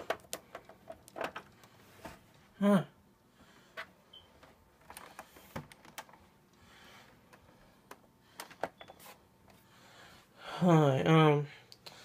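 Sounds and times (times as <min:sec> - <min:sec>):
cables plugging into console: 0:04.4 - 0:06.3.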